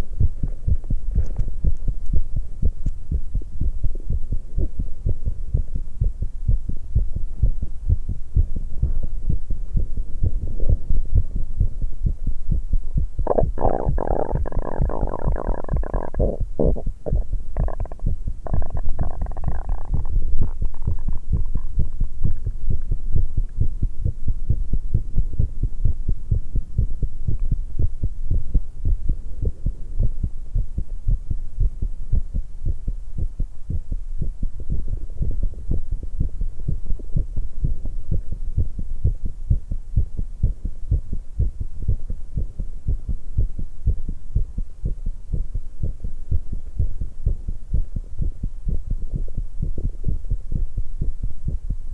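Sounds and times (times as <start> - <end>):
fast heartbeat pounding: 0.0 - 51.9
stomach gurgle: 13.3 - 22.6.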